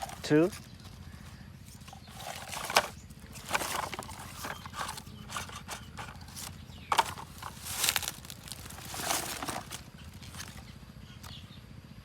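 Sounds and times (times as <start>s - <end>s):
light clicks and rustles: 0.0s - 11.4s.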